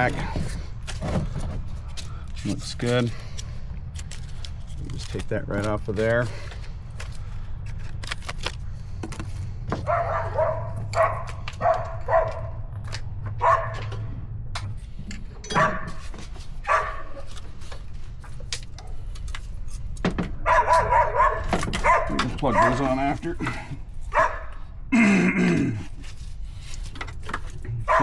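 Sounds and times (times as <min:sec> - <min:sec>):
dog barking: 0:09.8 - 0:12.6, 0:13.3 - 0:13.9, 0:15.5 - 0:16.0, 0:16.6 - 0:17.2, 0:20.4 - 0:23.2, 0:24.1 - 0:24.6.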